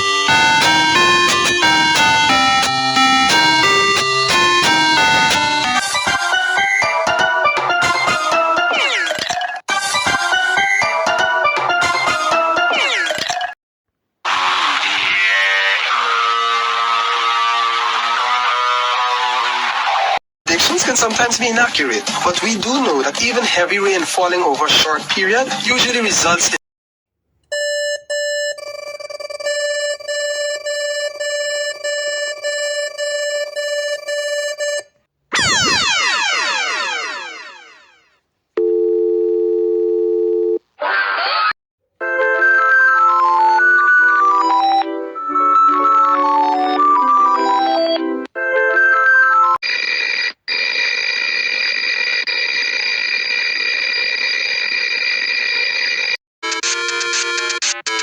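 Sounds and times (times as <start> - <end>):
steady multi-pitch warning tone: 0.0 - 5.8
steady electronic alarm tone: 0.0 - 5.9, 27.5 - 37.9
pulsing beep: 0.2 - 5.8.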